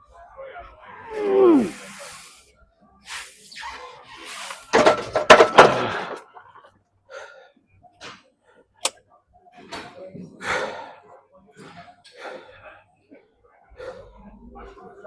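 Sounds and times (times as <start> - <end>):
hard breathing: 13.7 - 14.5.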